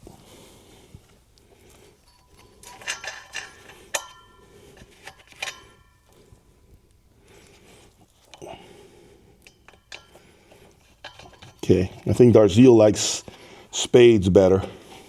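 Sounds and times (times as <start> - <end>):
metallic clicks of cable connectors: 1.4 - 7.0, 9.4 - 12.1.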